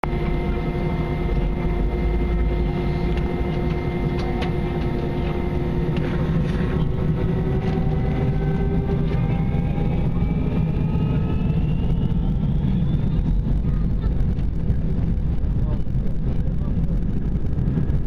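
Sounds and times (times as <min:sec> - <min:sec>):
jet engine whine: 0:00.0 - 0:18.0
low rumble: 0:00.0 - 0:18.0.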